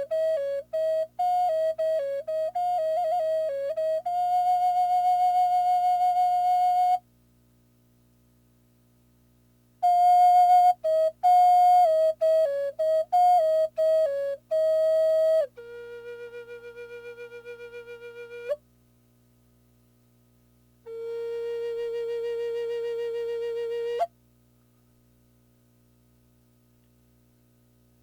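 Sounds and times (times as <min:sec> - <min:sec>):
solo flute melody: 0:00.0 - 0:07.0, 0:09.8 - 0:18.6, 0:20.9 - 0:24.1.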